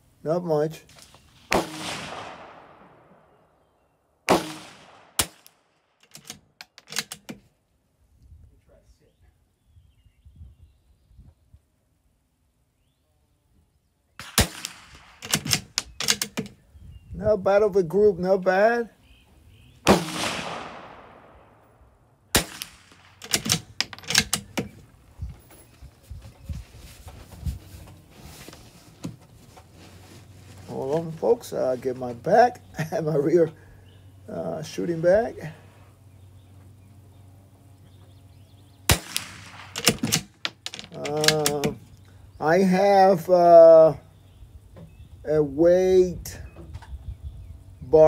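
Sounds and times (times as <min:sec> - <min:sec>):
rifle shot: 0:01.4 - 0:03.4, 0:04.3 - 0:05.9, 0:14.2 - 0:15.8, 0:19.8 - 0:21.7, 0:22.3 - 0:24.4, 0:38.9 - 0:40.4
rifle bolt metallic clicks: 0:04.5 - 0:07.4, 0:14.6 - 0:16.5, 0:22.4 - 0:24.7, 0:38.9 - 0:41.8
sharp click: 0:04.5 - 0:07.4, 0:22.4 - 0:24.7.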